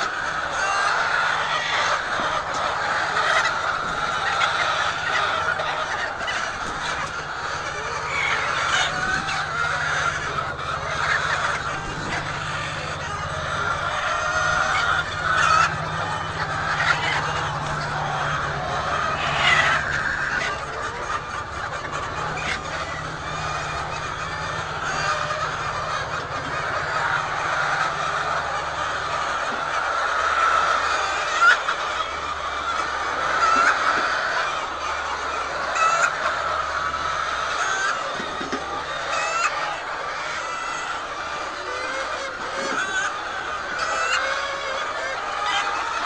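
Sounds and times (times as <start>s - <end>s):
hens clucking: 0.0s - 46.0s.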